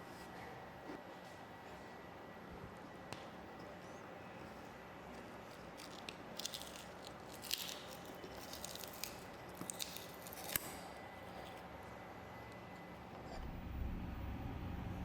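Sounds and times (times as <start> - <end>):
faint hum with high tone: 0.0 - 15.0
plastic crackling and clicking: 5.1 - 10.8.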